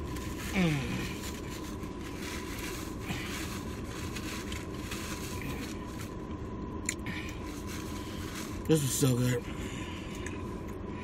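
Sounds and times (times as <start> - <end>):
low background rumble: 0.0 - 11.0.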